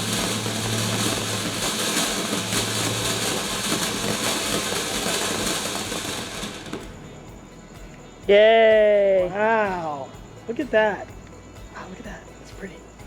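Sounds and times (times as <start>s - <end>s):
firework fountain hissing: 0.0s - 7.3s
low constant hum: 0.0s - 8.3s.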